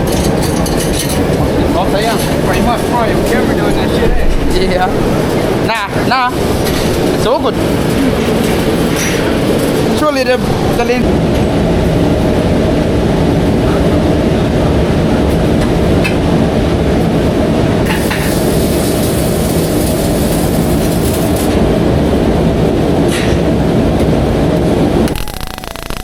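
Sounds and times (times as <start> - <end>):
road and wind noise: 0.0 - 18.3.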